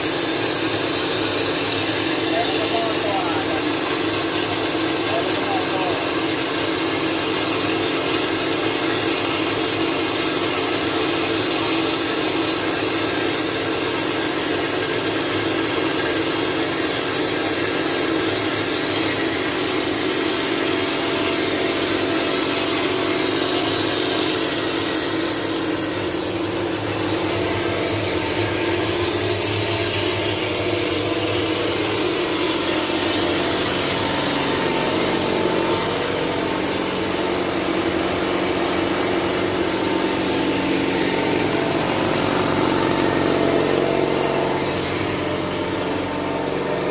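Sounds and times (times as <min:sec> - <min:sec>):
machine hum: 0:00.0 - 0:46.9.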